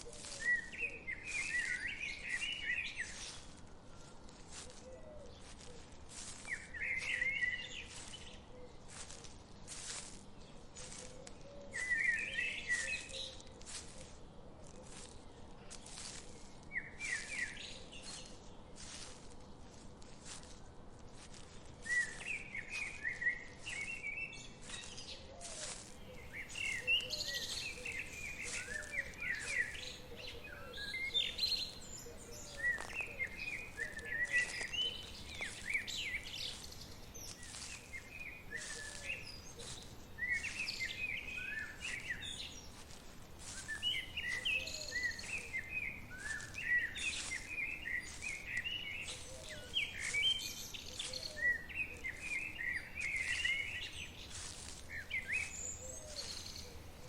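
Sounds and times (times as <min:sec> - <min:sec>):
small birds chirping: 0:00.0 - 0:03.6, 0:04.2 - 0:57.0
forest ambience hiss: 0:24.6 - 0:57.0.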